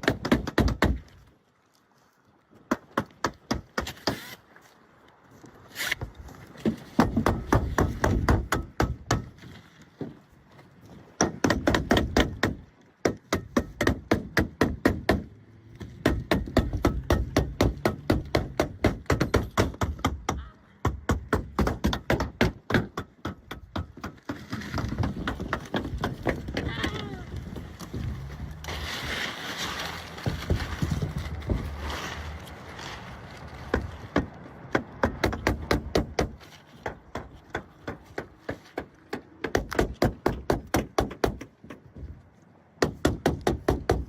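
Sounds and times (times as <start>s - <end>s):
nailing roof shingles: 21.0s - 42.2s.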